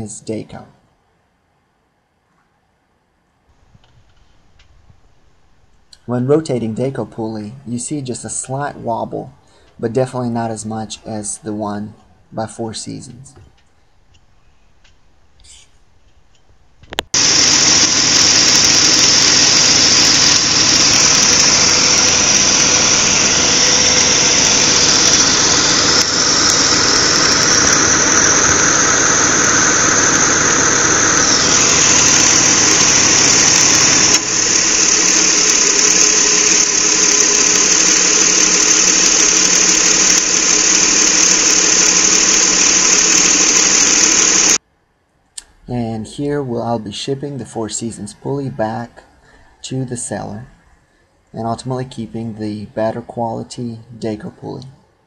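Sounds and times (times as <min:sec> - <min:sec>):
car engine running: 0:17.1 - 0:44.6
high-pitched squeal: 0:17.1 - 0:44.6.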